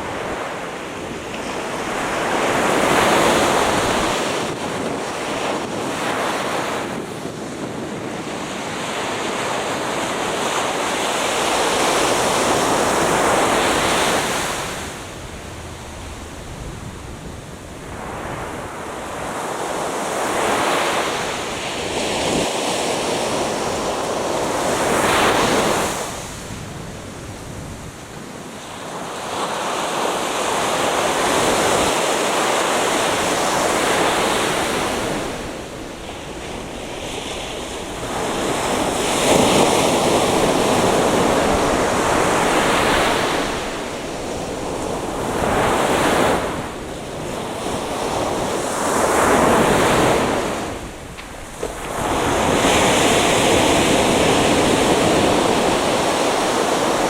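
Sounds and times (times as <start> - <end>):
surf breaking on beach: 0.0 - 57.0.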